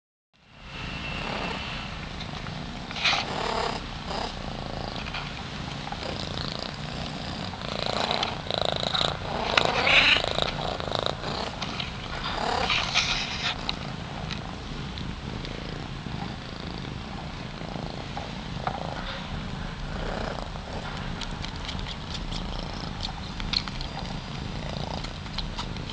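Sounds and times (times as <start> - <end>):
louder noisy sounds: 0.4 - 6.2
cats purring: 1.1 - 25.9.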